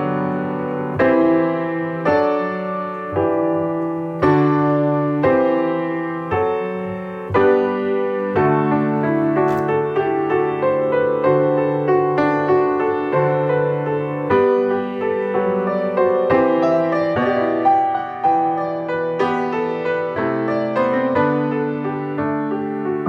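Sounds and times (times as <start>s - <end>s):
slow gentle piano music: 0.0s - 23.0s.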